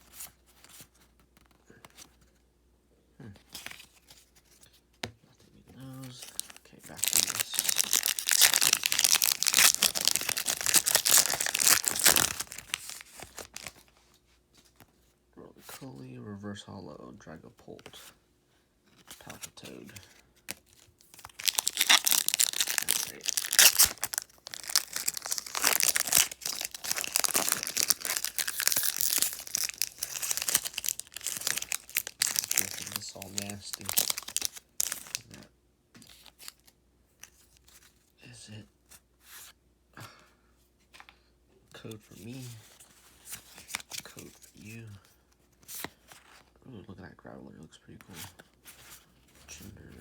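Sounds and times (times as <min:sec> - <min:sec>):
foil wrapper crinkling and tearing: 0:06.2 - 0:13.8, 0:20.5 - 0:35.4.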